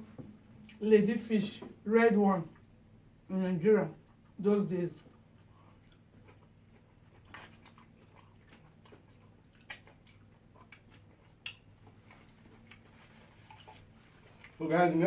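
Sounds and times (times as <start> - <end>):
steady low hum: 0.0 - 15.0
chewing and mouth noises: 4.0 - 4.4, 5.0 - 14.8.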